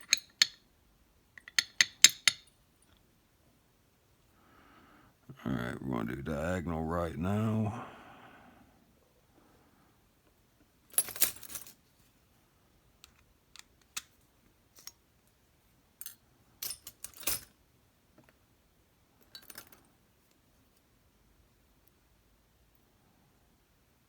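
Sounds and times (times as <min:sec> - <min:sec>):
small metal clicks and clinks: 0:00.0 - 0:00.6, 0:01.4 - 0:03.0, 0:19.2 - 0:19.9.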